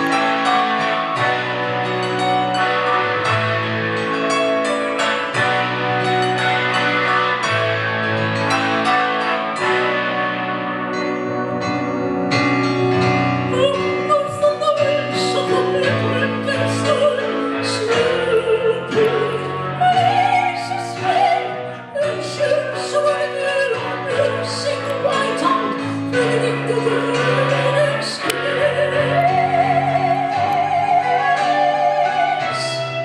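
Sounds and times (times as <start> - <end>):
guitar: 0.0 - 33.0
piano: 0.0 - 33.0
woman singing operatically: 13.5 - 33.0.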